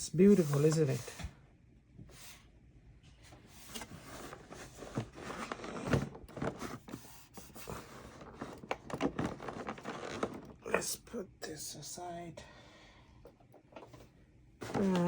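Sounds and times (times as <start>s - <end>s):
packaging rustling and clicking: 3.7s - 10.8s.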